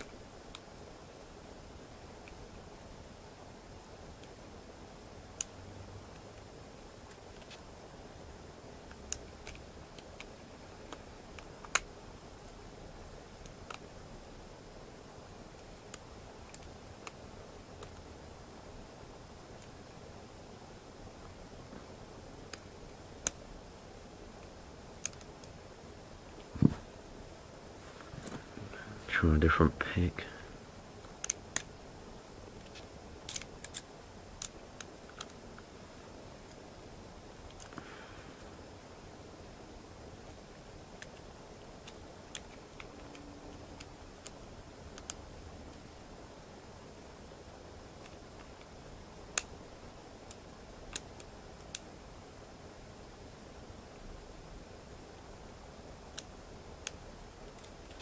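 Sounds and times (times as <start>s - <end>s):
lock picks clicking: 33.3s - 33.8s.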